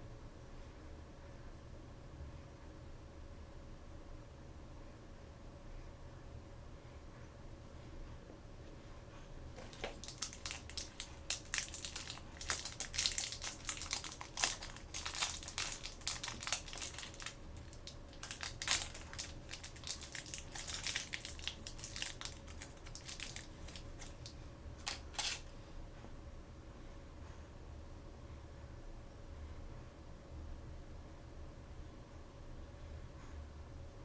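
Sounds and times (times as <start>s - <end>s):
plastic packaging crinkling: 9.6s - 25.5s.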